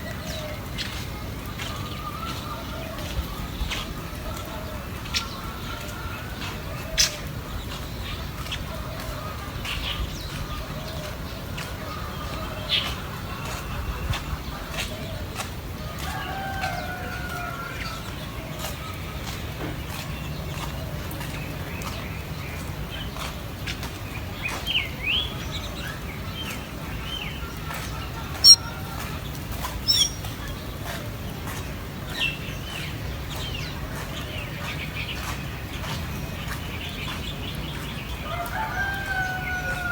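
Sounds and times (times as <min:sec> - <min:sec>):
small birds chirping: 0:18.6 - 0:38.5
sharp bird calls: 0:28.0 - 0:29.1, 0:29.7 - 0:30.5
bird chirps: 0:28.4 - 0:28.7, 0:29.8 - 0:30.3.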